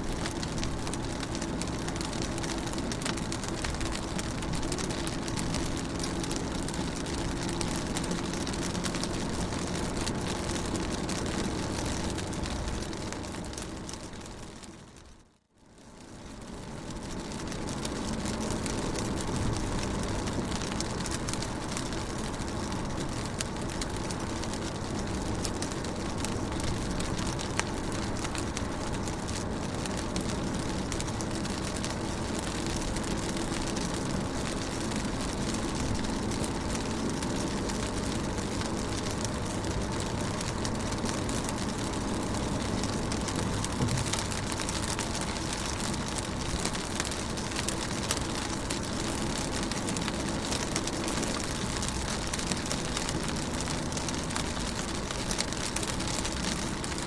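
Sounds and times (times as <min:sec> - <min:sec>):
rain on a car window: 0:00.0 - 0:57.0
low even rumble: 0:16.5 - 0:51.0.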